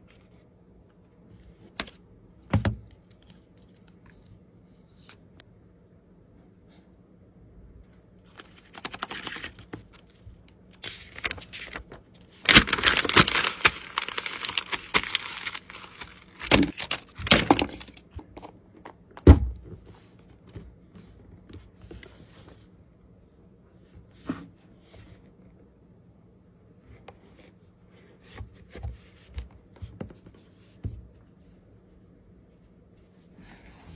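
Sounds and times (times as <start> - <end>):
packaging rustling and tearing: 8.3 - 18.1.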